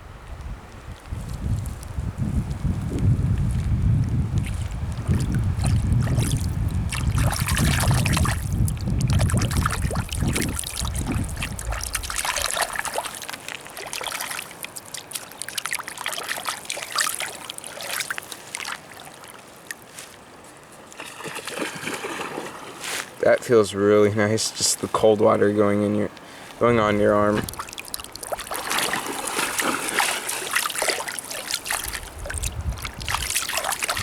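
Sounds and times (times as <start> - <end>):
wind rumble on microphone: 0.0 - 13.0, 26.6 - 29.0, 31.7 - 34.0
water trickling over rocks: 0.3 - 22.1, 24.8 - 34.0.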